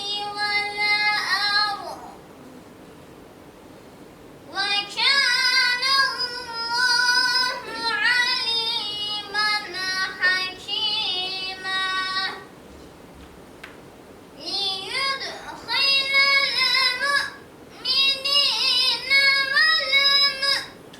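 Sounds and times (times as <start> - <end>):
child chanting recitation: 0.0 - 2.2, 4.5 - 12.5, 14.4 - 20.8.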